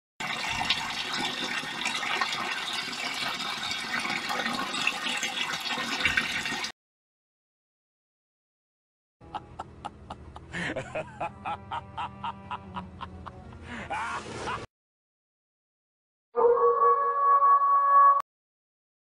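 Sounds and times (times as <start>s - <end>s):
water rushing and splashing: 0.2s - 6.7s.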